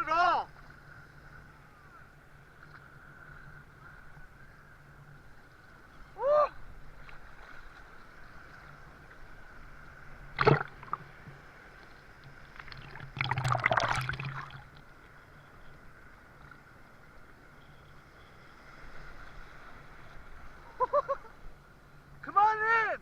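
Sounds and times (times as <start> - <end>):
steady wash of water: 6.5 - 15.0
water splashing around person wading: 10.0 - 14.9.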